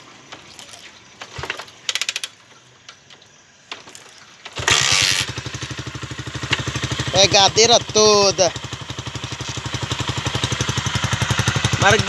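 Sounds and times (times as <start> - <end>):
rapid engine clatter: 4.5 - 12.0
motorcycle engine idling: 4.6 - 12.0.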